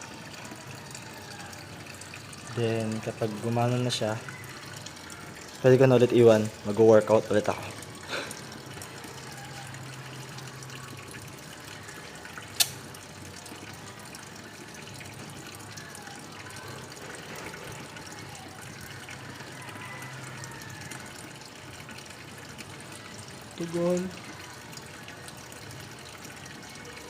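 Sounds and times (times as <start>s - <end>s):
sharp click: 12.6s - 12.8s.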